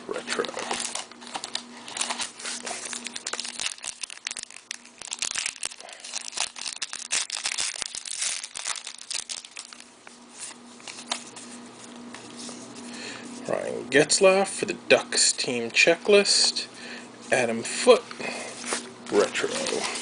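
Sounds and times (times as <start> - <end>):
foil pack crinkling and tearing: 0.2 - 11.4, 18.6 - 20.0.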